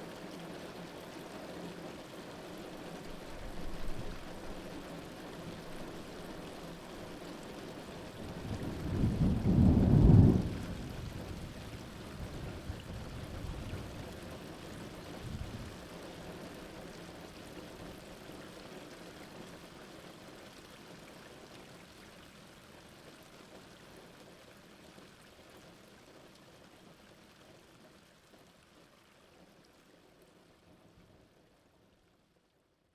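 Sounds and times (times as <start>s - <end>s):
heavy rain falling: 2.5s - 18.8s
thunder rumble: 8.2s - 14.3s.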